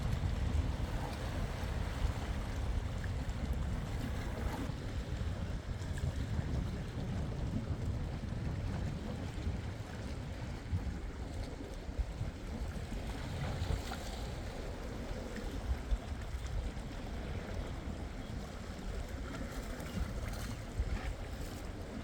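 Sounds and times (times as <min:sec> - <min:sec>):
waves washing: 0:00.0 - 0:05.8
wind buffeting microphone: 0:00.0 - 0:22.0.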